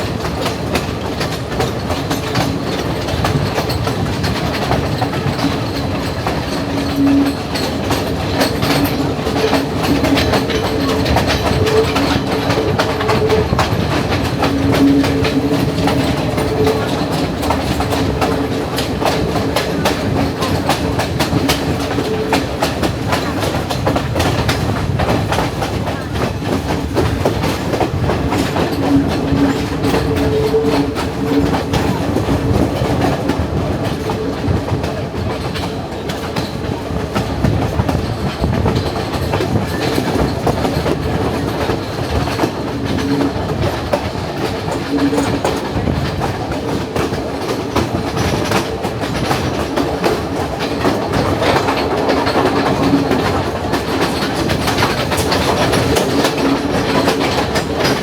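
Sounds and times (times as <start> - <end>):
train rumble: 0.0 - 58.0
train wheels clattering over rail joints: 0.0 - 58.0.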